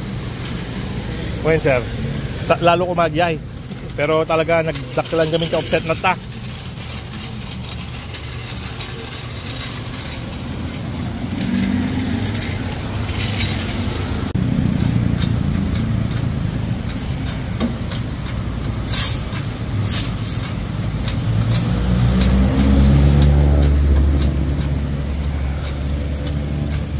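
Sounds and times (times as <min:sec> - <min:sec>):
vehicle engine running: 0:00.0 - 0:26.9
short hisses of air: 0:18.8 - 0:20.5.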